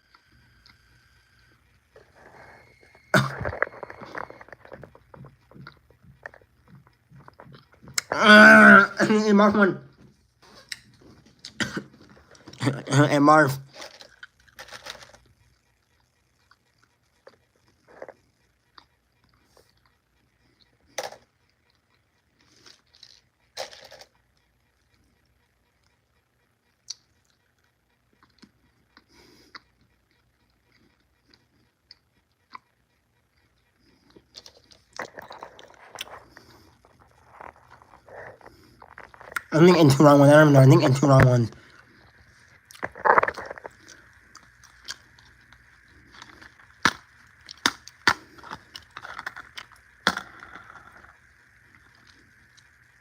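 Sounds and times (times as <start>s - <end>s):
soft chewing mouth clicks: 3.5s - 8.1s, 26.8s - 32.7s
small hard objects clicking: 42.6s - 52.8s.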